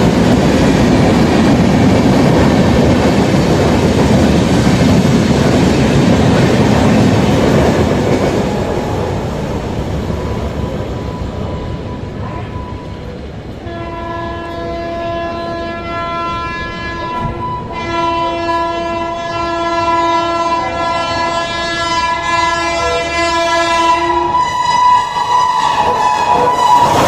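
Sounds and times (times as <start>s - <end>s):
train rumble: 0.0s - 27.0s
locomotive horn blast: 13.6s - 27.0s.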